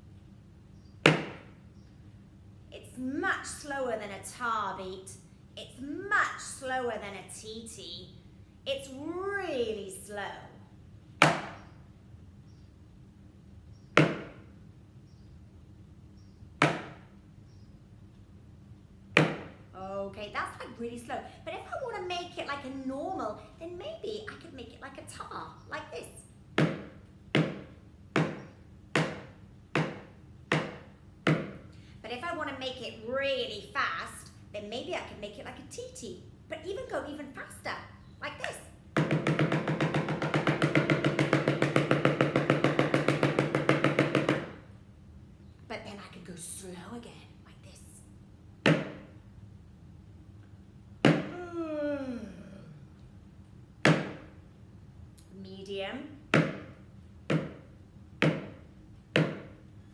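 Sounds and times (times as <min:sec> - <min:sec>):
homemade drum knocks: 0:01.1 - 0:01.5, 0:14.0 - 0:14.4, 0:16.6 - 0:17.0, 0:26.6 - 0:31.6, 0:39.0 - 0:44.6, 0:57.3 - 0:57.6, 0:58.2 - 0:58.6, 0:59.2 - 0:59.6.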